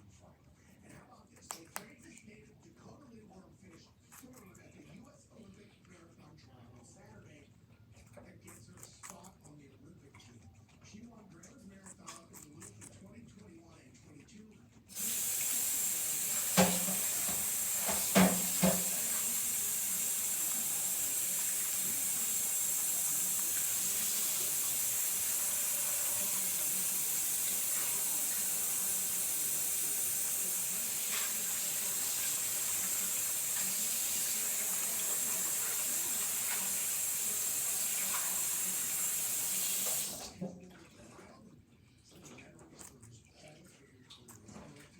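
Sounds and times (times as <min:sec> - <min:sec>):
steady hiss of steam: 0:14.9 - 0:39.8.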